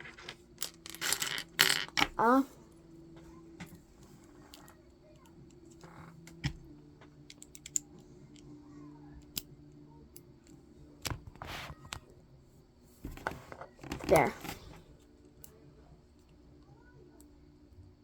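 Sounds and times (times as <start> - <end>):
faint low hum: 0.0 - 18.0
plastic pieces clicking: 0.1 - 2.2, 7.3 - 8.4.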